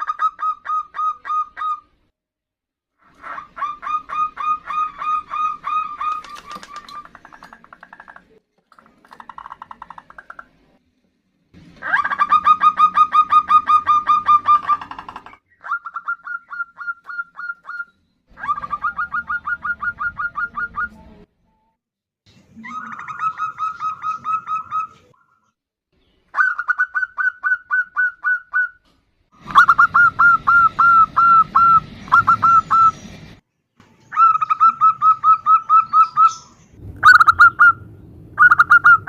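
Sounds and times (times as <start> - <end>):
dove rapid calls: 3.2 - 8.3, 11.8 - 21.0, 29.4 - 33.1, 34.1 - 39.0.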